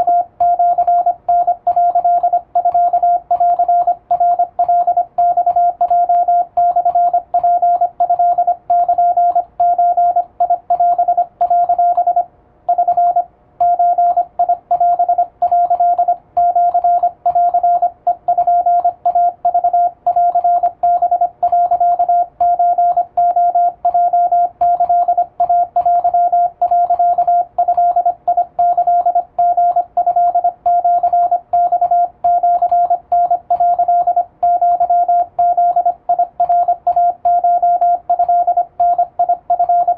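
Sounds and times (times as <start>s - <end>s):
morse code beeps: 0.0s - 39.9s.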